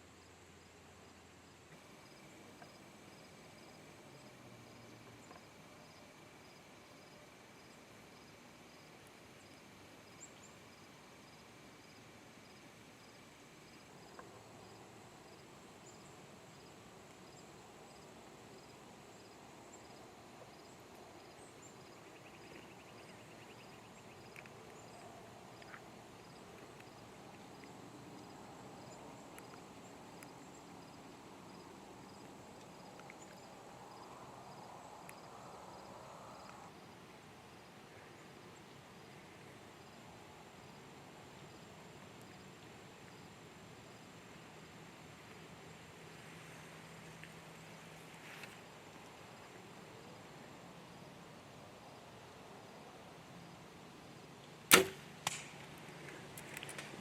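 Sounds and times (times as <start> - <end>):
insect chirp: 0.0 - 57.0
insect trill: 0.1 - 25.0.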